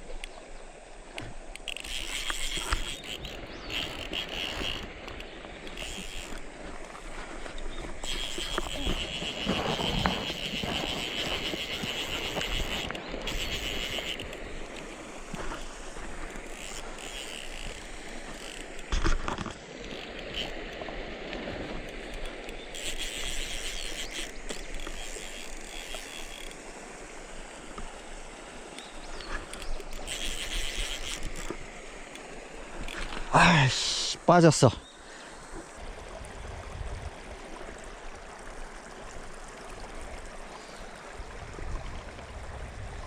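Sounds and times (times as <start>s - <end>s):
fishing reel ratcheting: 1.5s - 21.0s, 21.7s - 33.3s.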